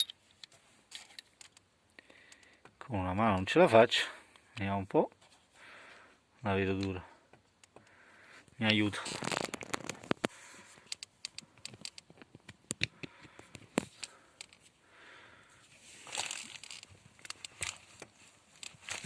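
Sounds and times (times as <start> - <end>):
plastic connectors clicking and tapping: 8.6 - 14.6.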